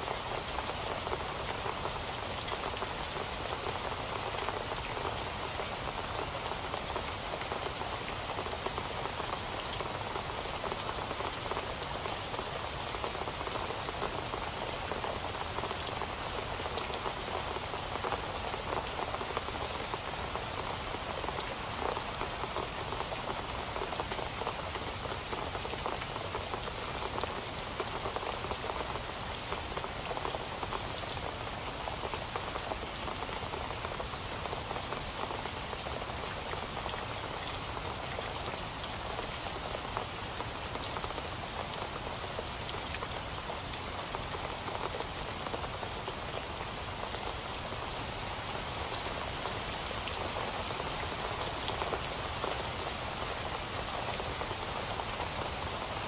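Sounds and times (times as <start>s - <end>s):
steady rain patter: 0.0s - 56.0s.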